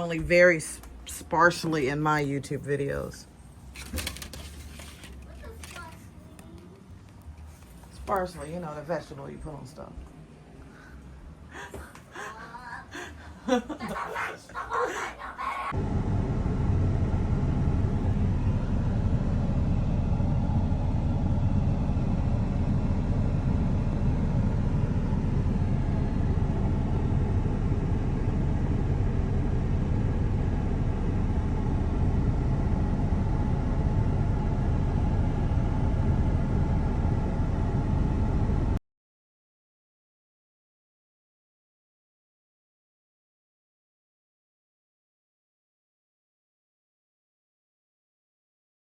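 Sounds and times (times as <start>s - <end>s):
steady low rumble: 15.4s - 38.8s.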